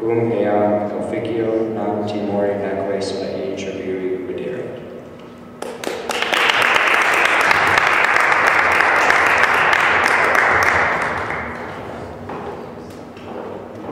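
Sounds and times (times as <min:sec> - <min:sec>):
audience applauding: 0:05.6 - 0:12.1.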